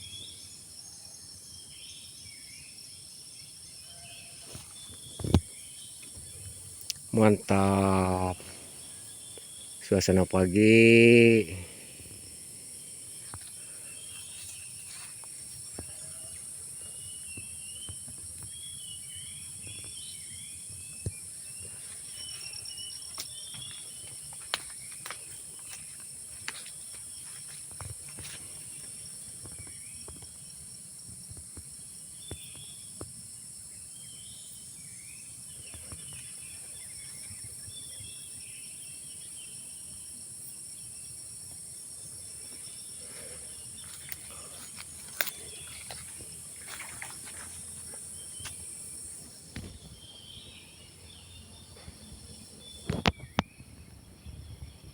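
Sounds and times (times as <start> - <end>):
high-pitched insect drone: 41.9 - 49.8.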